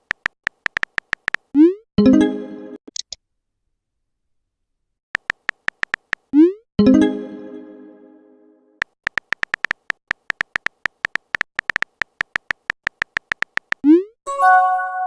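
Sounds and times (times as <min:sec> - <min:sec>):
phone keyboard tap clicks: 0:00.0 - 0:01.4, 0:05.2 - 0:06.3, 0:08.8 - 0:13.8.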